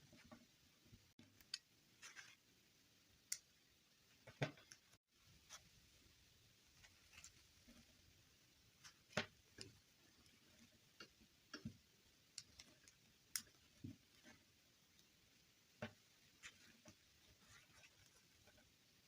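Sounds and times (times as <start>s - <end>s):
small objects clicking and tapping: 8.8s - 14.3s.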